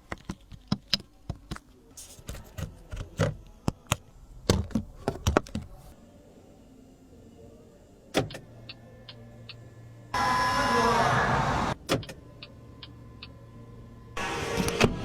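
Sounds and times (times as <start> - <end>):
car power window motor: 10.2 - 11.8, 14.2 - 15.0.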